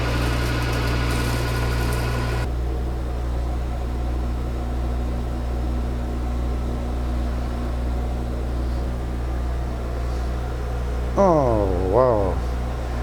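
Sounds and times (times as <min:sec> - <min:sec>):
metal lathe humming: 0:00.0 - 0:02.5.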